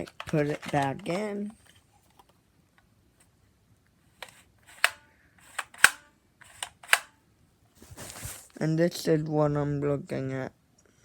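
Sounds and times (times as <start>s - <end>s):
plastic lever clicking: 4.2s - 7.1s.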